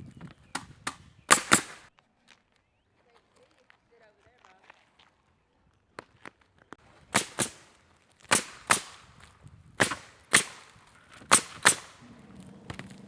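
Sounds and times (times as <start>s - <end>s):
nails driven into wood: 0.5s - 1.8s, 11.2s - 12.0s.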